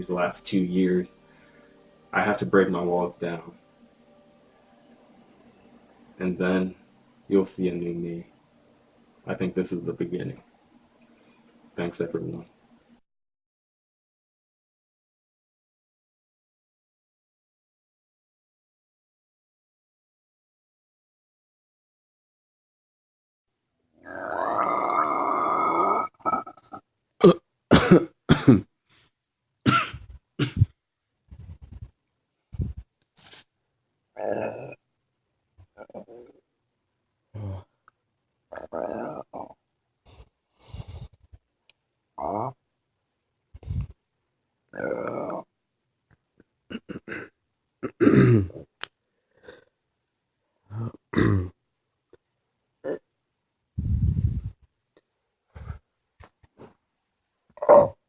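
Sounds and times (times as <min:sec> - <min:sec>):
man burping: 0:24.1 - 0:28.6, 0:29.7 - 0:30.7, 0:46.7 - 0:48.7, 0:50.7 - 0:51.6
person coughing: 0:27.2 - 0:28.6, 0:29.7 - 0:30.7, 0:46.7 - 0:48.6, 0:51.2 - 0:51.5
throat sounds: 0:37.4 - 0:37.8, 0:46.7 - 0:48.7, 0:50.7 - 0:51.5.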